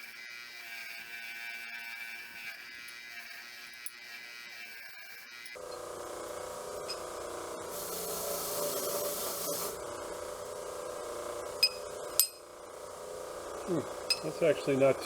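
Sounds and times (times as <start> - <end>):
electric grinder running: 0.0 - 15.0
sharp metallic clinks: 14.1 - 14.5.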